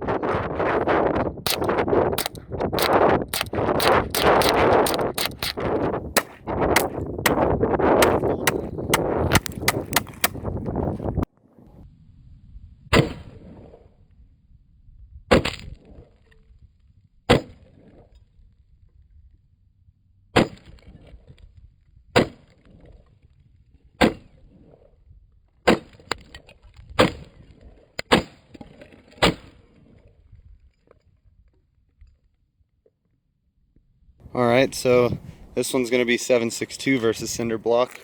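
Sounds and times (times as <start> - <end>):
rifle shots: 1.5 - 10.4.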